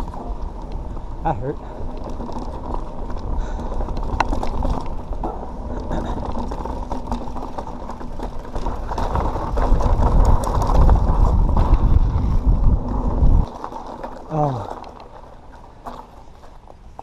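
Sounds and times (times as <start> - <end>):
bike chain and frame rattling: 0.0 - 17.0
bike tyre rumble on dirt: 0.0 - 17.0.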